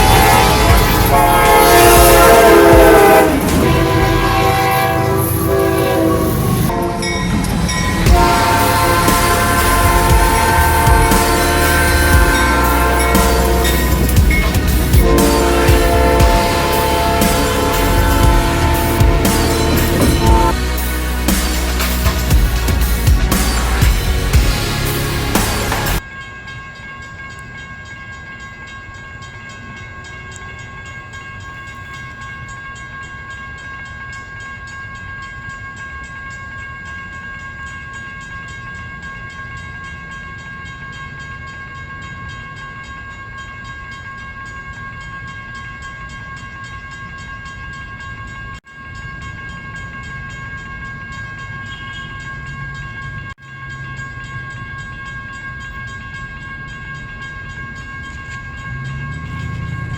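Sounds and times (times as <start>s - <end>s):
freight train rumble: 0.0s - 59.9s
high-pitched ringing tone: 26.0s - 59.9s.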